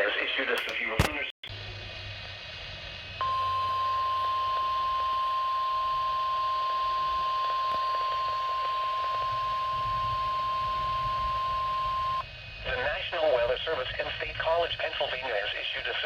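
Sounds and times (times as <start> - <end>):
radio background hiss: 0.0 - 16.0
steady alarm tone: 3.2 - 12.2.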